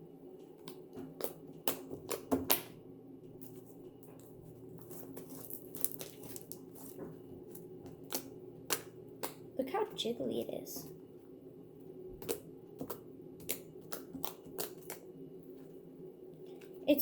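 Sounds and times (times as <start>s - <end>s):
slime squished by hand: 4.8s - 9.4s, 12.2s - 15.1s.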